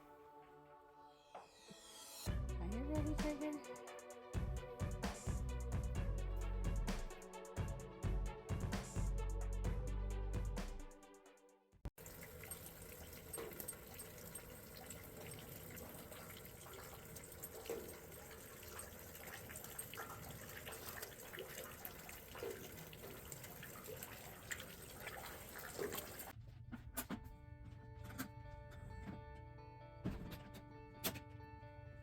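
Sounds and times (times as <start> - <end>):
music: 0.0 - 11.9, 26.4 - 32.0
light ticks and splashes: 12.0 - 26.3
running water rushing: 12.0 - 26.3.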